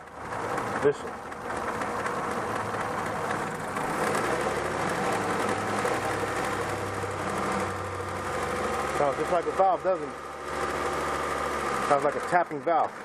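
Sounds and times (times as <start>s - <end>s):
drive belt tapping: 0.0s - 6.8s
engine idling: 0.0s - 13.0s.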